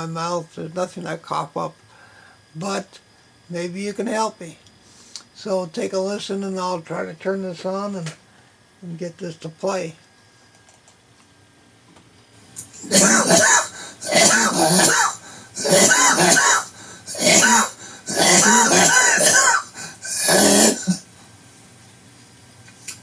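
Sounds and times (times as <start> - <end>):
man coughing harshly: 12.8 - 21.1.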